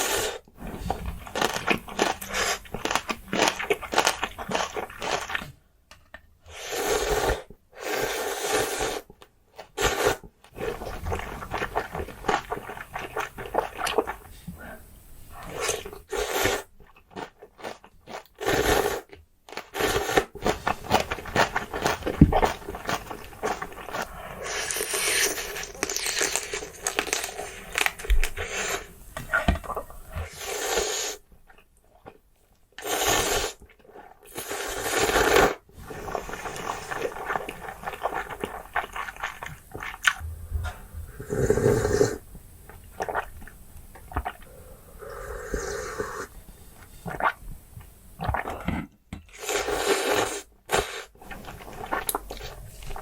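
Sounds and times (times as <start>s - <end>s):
crunching and chewing: 0.8s - 5.6s, 16.8s - 29.9s, 50.8s - 53.0s.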